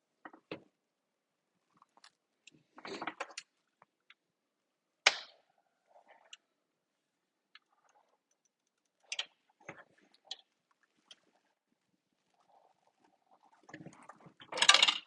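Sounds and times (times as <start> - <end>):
plastic parts clicking and knocking: 7.5 - 11.3, 13.7 - 15.0.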